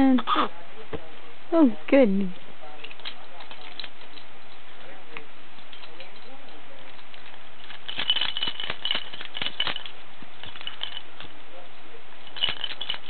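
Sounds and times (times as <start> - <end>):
small hard object rattling: 2.8 - 4.6, 5.6 - 11.4, 12.2 - 13.0.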